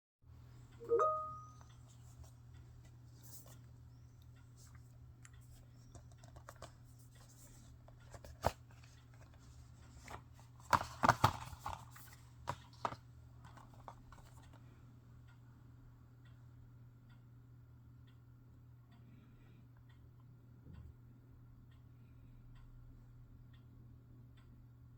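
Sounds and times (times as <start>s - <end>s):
plastic cases clicking and tapping: 10.0s - 14.5s.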